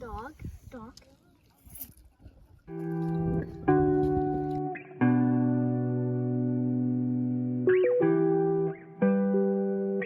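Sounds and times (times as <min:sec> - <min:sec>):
sustained guitar notes: 0:02.7 - 0:10.0.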